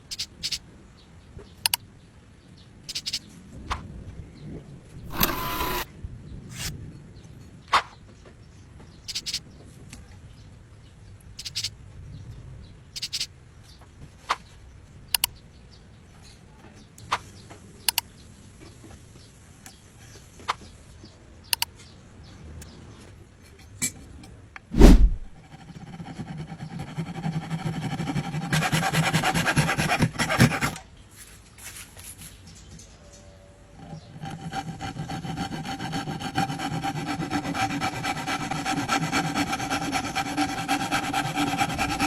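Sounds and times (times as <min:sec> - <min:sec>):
rasp rubbing on wood: 0:05.1 - 0:05.8, 0:24.8 - 0:30.8, 0:33.8 - 0:42.0
heavy thump: 0:24.8 - 0:25.3.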